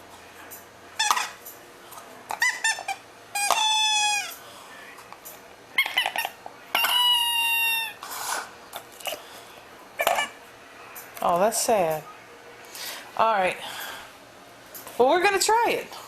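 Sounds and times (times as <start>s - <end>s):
doll crier squeaking: 1.0s - 1.4s, 2.4s - 4.4s, 5.8s - 8.0s.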